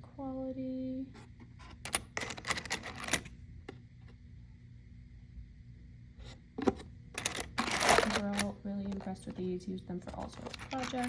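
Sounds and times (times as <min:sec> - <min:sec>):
screws clicking and rattling: 0:01.6 - 0:03.3, 0:06.6 - 0:09.4, 0:10.1 - 0:11.0.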